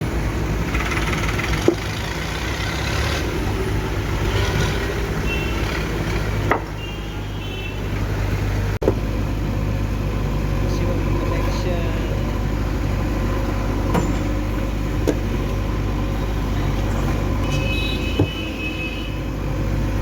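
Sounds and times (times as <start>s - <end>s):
heavy diesel engine running: 0.0s - 20.0s
sharp knocks: 6.0s - 6.8s, 18.1s - 18.4s.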